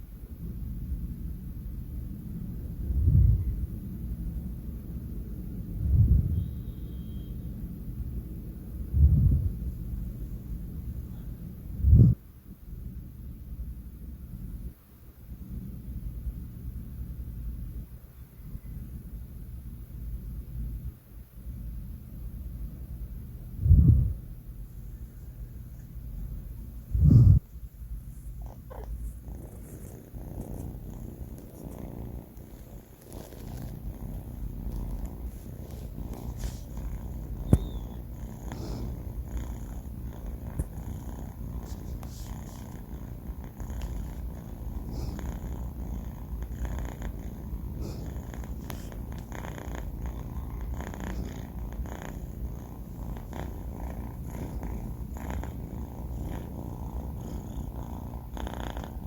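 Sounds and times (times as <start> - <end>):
kitten purring: 2.1 - 7.0, 8.4 - 12.3, 23.5 - 59.0.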